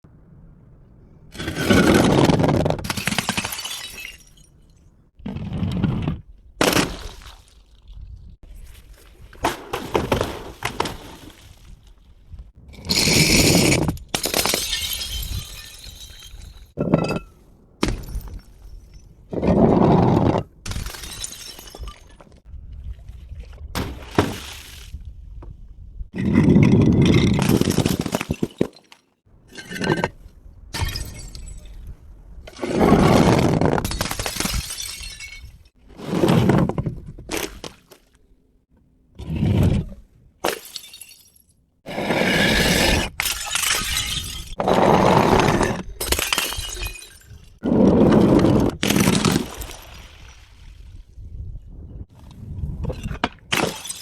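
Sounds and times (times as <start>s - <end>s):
glass bottles smashing: 2.9s - 4.7s, 14.2s - 17.3s, 20.7s - 22.4s, 33.8s - 35.6s, 40.5s - 41.5s, 43.2s - 44.6s, 46.0s - 47.6s, 53.5s - 54.0s.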